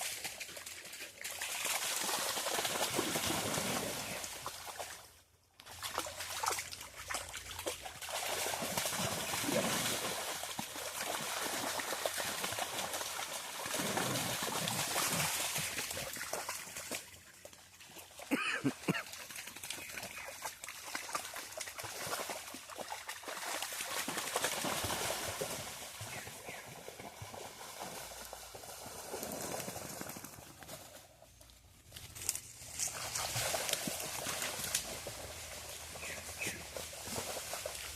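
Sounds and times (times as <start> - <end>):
running water splashing: 5.7 - 17.5.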